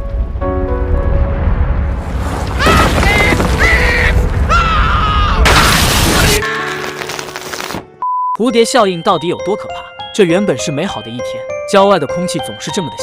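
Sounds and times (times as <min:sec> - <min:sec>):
loud crash: 0:01.3 - 0:04.6, 0:05.4 - 0:06.5.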